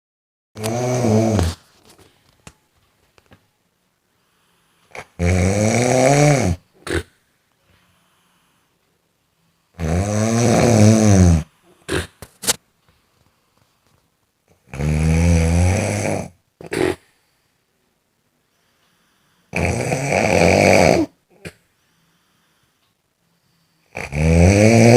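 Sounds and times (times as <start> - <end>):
person snoring: 0.6 - 1.6, 4.9 - 7.2, 9.7 - 12.2, 14.7 - 17.1, 19.4 - 21.6, 23.8 - 24.9.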